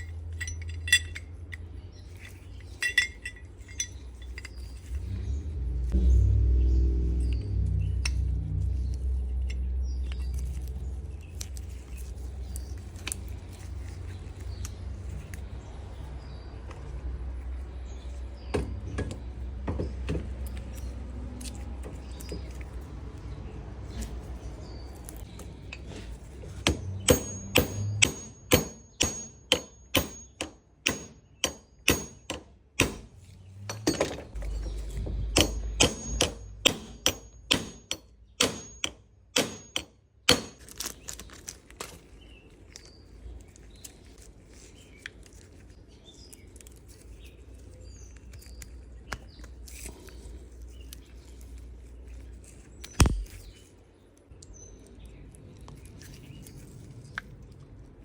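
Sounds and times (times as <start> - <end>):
low hum: 0.0 - 14.5, 32.8 - 39.8
hammer striking steel: 26.6 - 40.6.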